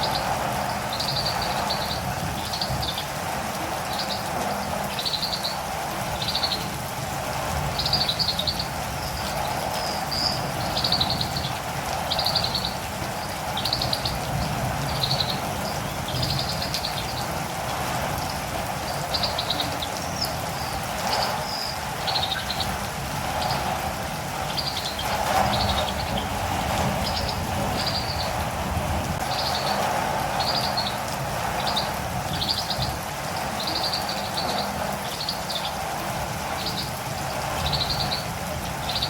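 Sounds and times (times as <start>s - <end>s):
birds chattering calls: 0.0s - 39.0s
steady rain: 0.0s - 39.0s.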